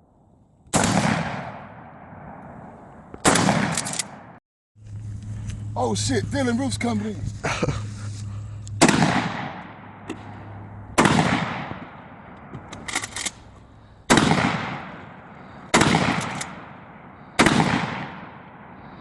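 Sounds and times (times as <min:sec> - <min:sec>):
shotgun shots: 0:00.7 - 0:04.4, 0:08.8 - 0:13.5, 0:14.1 - 0:18.8
small sharp clicks: 0:03.7 - 0:04.1.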